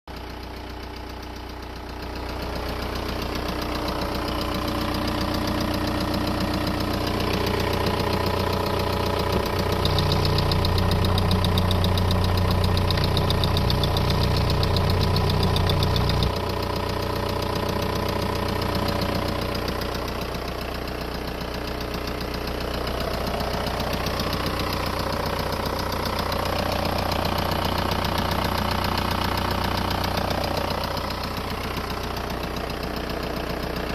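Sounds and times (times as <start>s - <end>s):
diesel engine running: 0.1s - 33.9s.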